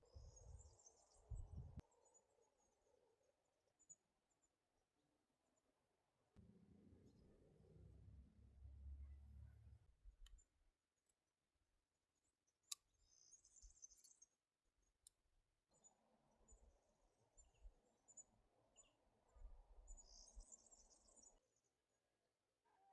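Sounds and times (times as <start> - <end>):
faint high bird chirps: 0.0 - 4.5, 12.2 - 15.0, 15.7 - 21.7.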